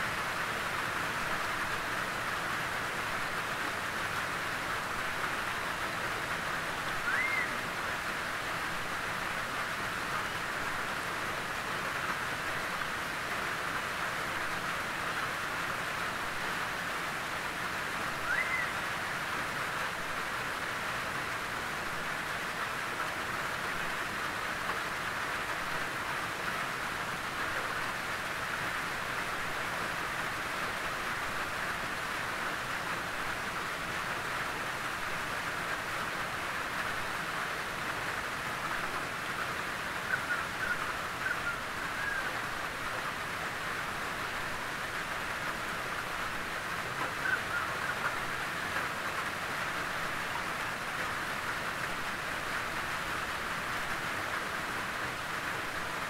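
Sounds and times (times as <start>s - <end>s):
rain on a tin roof: 0.0s - 56.0s
bird chirps: 7.1s - 7.5s, 18.3s - 18.8s.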